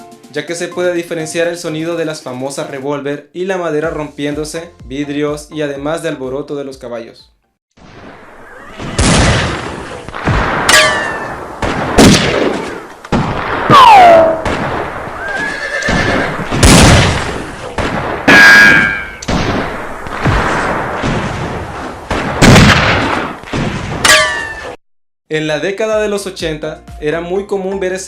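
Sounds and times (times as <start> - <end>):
ricochet whine: 7.9 - 24.8
horse whinnying: 8.4 - 9.1, 13.7 - 14.4, 15.1 - 16.5.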